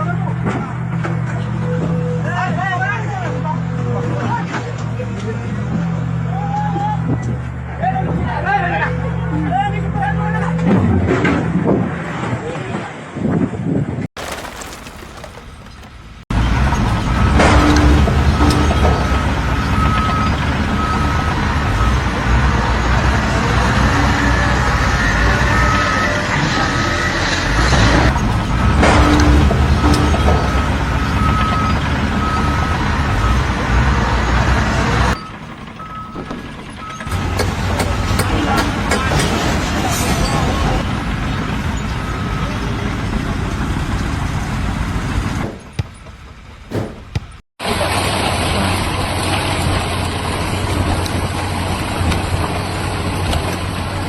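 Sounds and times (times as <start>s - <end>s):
heavy vehicle engine rumbling: 14.2s - 54.0s.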